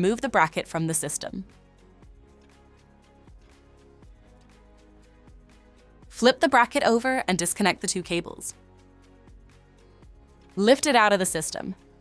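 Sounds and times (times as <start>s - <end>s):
soft background music: 0.0s - 12.0s.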